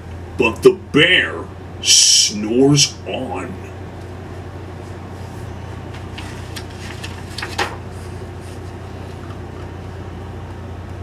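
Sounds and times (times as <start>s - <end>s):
book pages rustling and turning: 4.8s - 9.3s.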